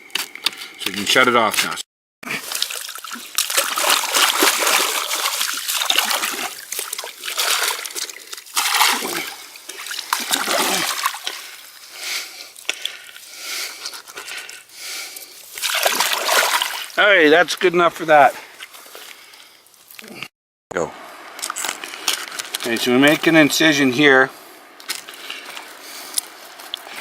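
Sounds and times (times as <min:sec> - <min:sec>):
water splashing and trickling: 0:02.2 - 0:14.6, 0:15.4 - 0:17.2.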